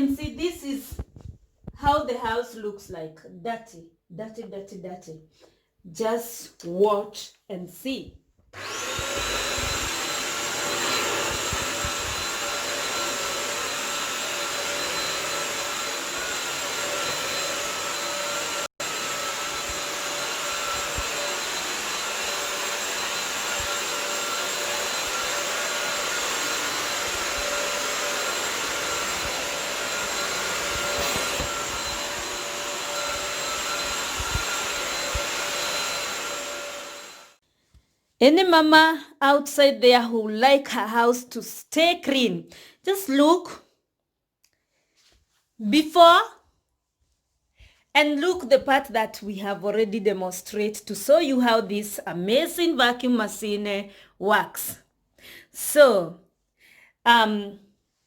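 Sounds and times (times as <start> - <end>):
carpet vacuum cleaner whining: 8.6 - 37.4.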